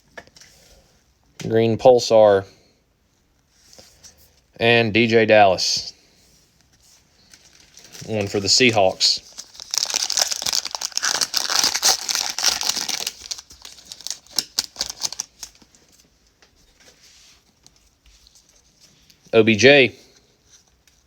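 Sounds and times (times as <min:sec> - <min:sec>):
foil wrapper crinkling and tearing: 0:07.2 - 0:15.8.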